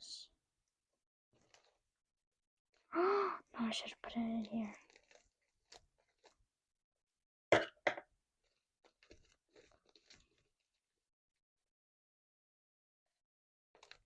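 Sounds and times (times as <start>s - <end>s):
faint crackles: 2.8s - 6.4s.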